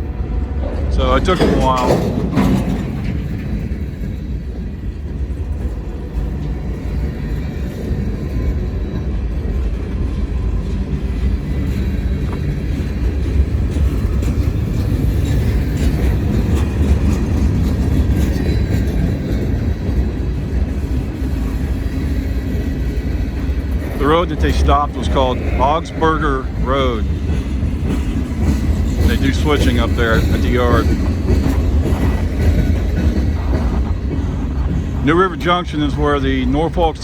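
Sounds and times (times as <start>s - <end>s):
freight train rumbling past: 0.0s - 37.0s
faint rail clicks: 10.8s - 37.0s.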